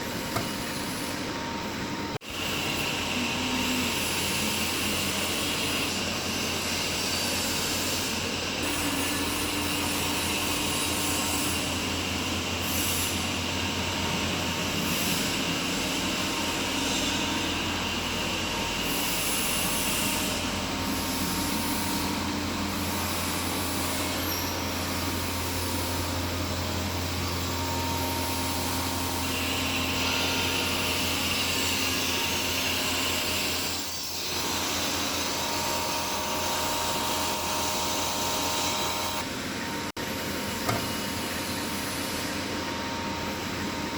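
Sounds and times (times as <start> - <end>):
machine hum and whir: 0.0 - 43.9.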